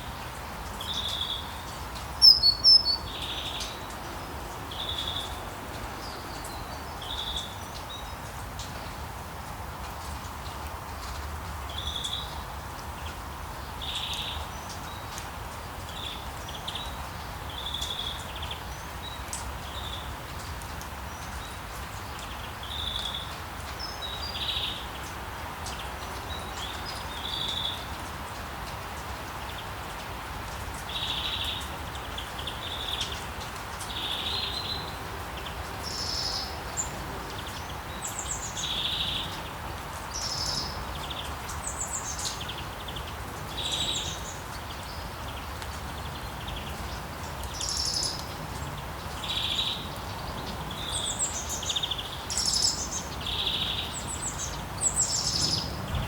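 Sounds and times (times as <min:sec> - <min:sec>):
small birds chirping: 0:00.0 - 0:08.9, 0:30.7 - 0:56.0
steady background hiss: 0:21.8 - 0:56.0.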